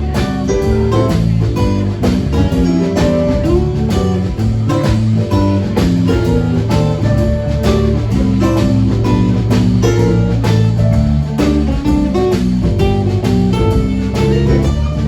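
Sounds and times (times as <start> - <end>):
bass line: 0.0 - 15.0
guitar: 0.0 - 15.0
steady beat: 0.0 - 15.0.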